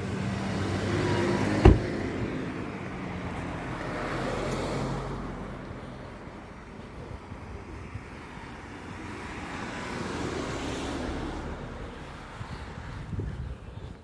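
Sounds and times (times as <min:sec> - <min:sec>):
cars passing on road: 0:00.0 - 0:14.0.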